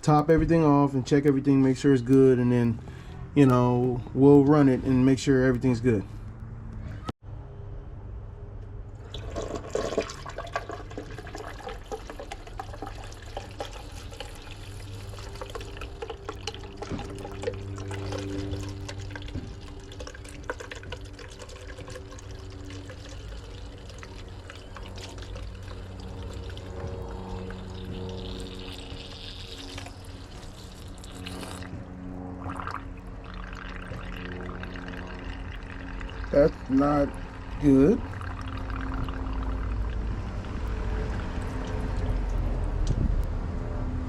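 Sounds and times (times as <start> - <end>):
low hum: 0.0 - 44.0
liquid pouring and gurgling: 9.0 - 42.4.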